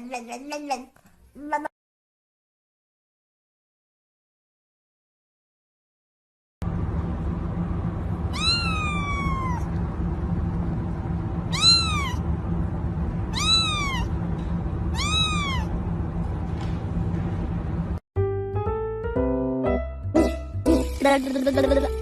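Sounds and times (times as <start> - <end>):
steady low hum: 6.6 - 18.0
cat meowing: 8.3 - 9.7, 11.5 - 12.2, 13.3 - 14.1, 14.9 - 15.8.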